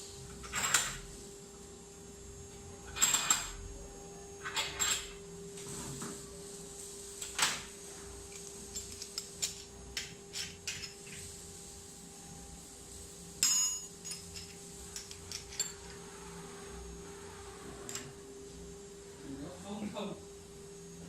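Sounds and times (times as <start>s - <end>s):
steady hum: 0.0s - 21.0s
metal tools clinking: 13.4s - 15.9s.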